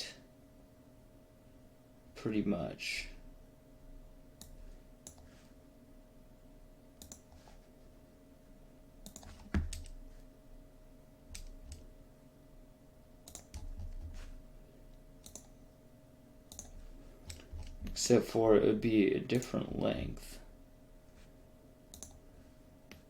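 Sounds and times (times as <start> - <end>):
faint steady hum: 0.0 - 23.0
keyboard and mouse clicks: 4.4 - 5.3, 7.0 - 7.4, 9.0 - 10.0, 13.2 - 14.2, 15.2 - 15.6, 16.5 - 17.9, 21.9 - 22.2.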